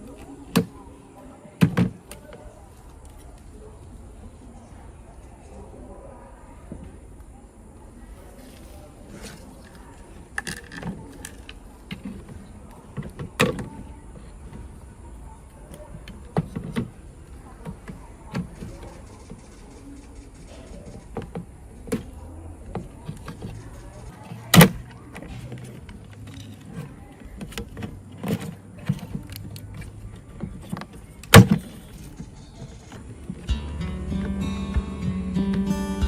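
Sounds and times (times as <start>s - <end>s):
tools and parts clicking: 9.2s - 12.3s, 23.0s - 32.6s.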